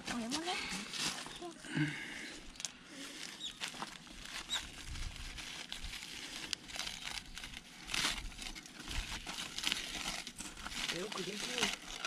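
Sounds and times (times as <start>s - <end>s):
paper crinkling and tearing: 2.6s - 12.0s.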